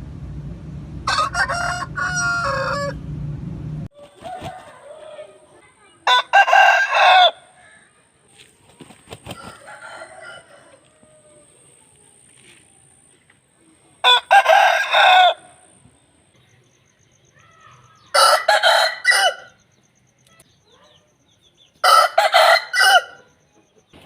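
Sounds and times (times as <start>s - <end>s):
roosters crowing: 1.0s - 3.1s, 3.9s - 7.8s, 9.2s - 11.8s, 14.0s - 15.8s, 18.0s - 19.6s, 21.8s - 23.3s.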